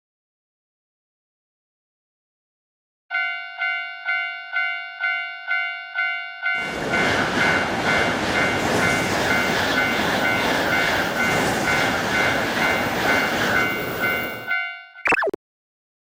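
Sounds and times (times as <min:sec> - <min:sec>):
train passing with rushing rumble: 0:06.6 - 0:14.5.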